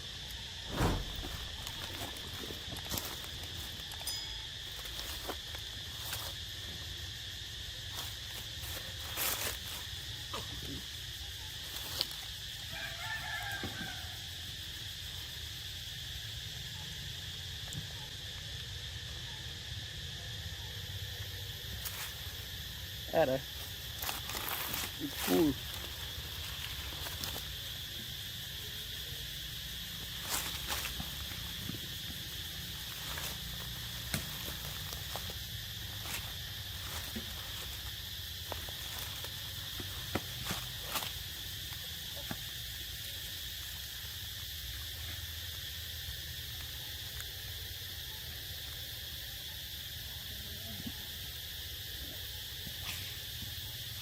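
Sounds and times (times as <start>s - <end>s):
insects droning: 0.0s - 54.0s.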